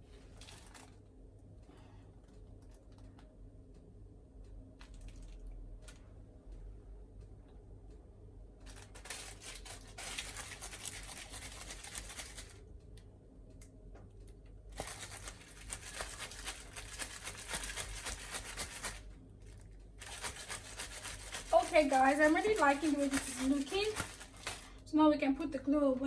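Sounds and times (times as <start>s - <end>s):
scratchy rubbing handling noise: 14.8s - 19.0s, 20.0s - 24.7s.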